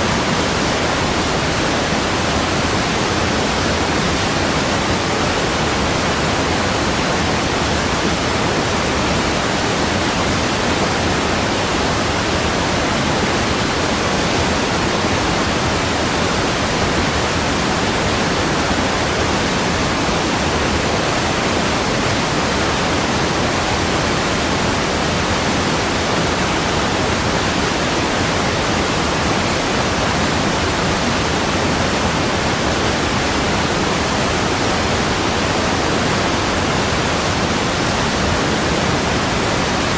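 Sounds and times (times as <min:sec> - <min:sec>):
rushing water: 0:00.0 - 0:39.9.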